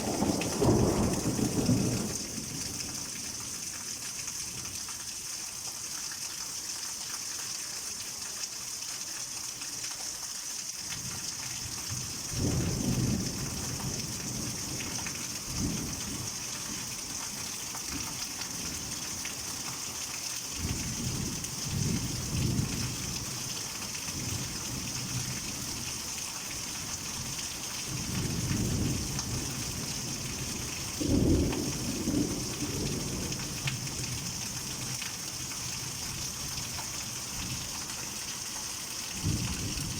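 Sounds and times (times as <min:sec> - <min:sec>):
thunder rumbling: 0:00.0 - 0:02.7
heavy rain hissing: 0:00.0 - 0:04.6, 0:10.8 - 0:36.4.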